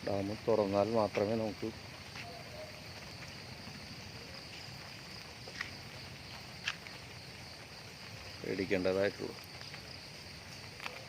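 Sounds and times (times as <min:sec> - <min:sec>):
faint high-pitched hiss: 0:00.0 - 0:11.0.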